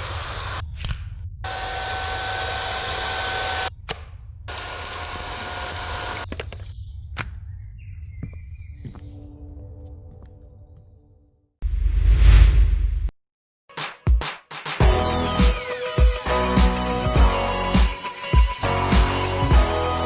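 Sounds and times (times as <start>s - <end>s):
vacuum cleaner running: 0.0s - 0.6s, 1.5s - 3.7s, 4.5s - 6.3s.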